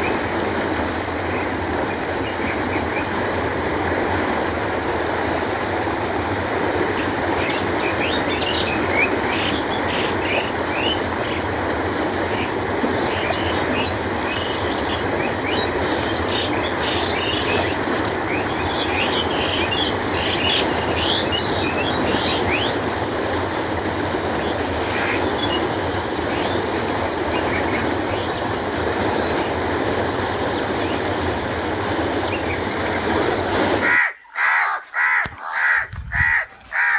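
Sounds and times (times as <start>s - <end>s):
canal water rushing: 0.0s - 34.2s
small birds chirping: 13.1s - 22.8s
crow cawing: 33.8s - 36.9s.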